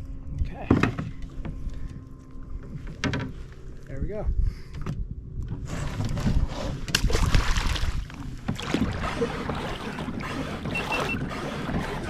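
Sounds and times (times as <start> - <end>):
wind buffeting microphone: 0.0 - 12.0
water sloshing around kayak: 5.5 - 12.0.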